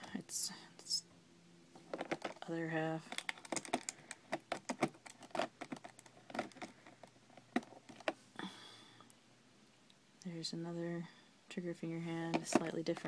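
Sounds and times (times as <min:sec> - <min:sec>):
plastic parts clicking and crinkling: 0:01.8 - 0:08.2, 0:12.2 - 0:13.0.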